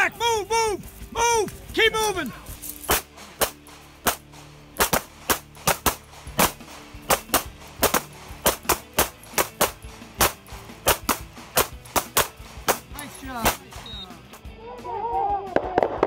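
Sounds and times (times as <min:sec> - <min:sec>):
handgun shots: 0:02.8 - 0:13.8.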